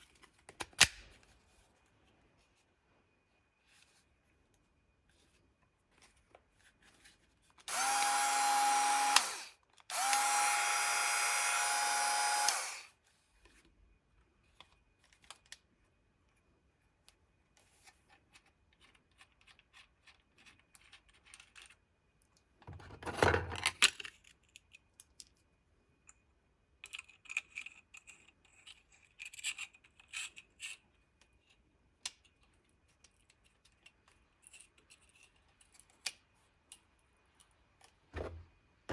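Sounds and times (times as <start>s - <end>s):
angle grinder running: 7.7s - 12.9s.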